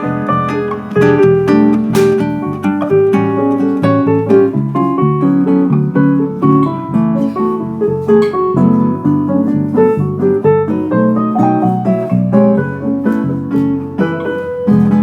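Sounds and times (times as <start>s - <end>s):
guitar notes: 0.0s - 6.2s
piano notes: 0.0s - 15.0s.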